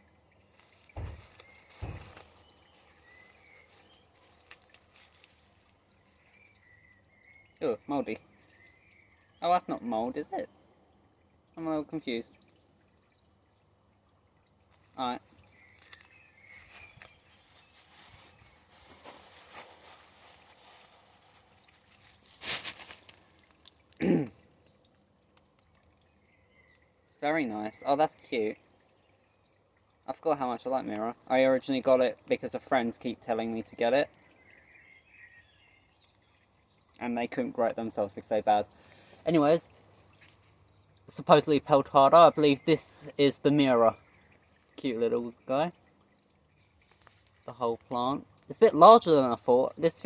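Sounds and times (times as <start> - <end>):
plant packaging crinkling: 0.5 - 6.7, 15.7 - 24.0
faint bird chirps: 1.0 - 4.3, 6.0 - 10.6.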